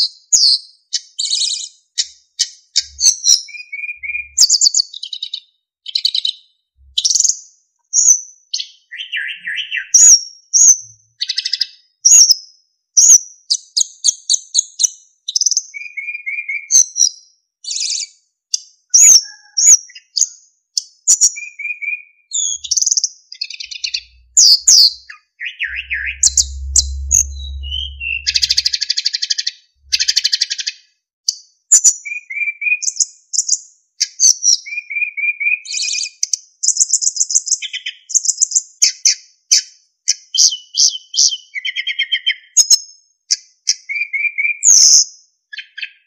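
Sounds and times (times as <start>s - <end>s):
flycatcher singing: 25.6s - 28.7s.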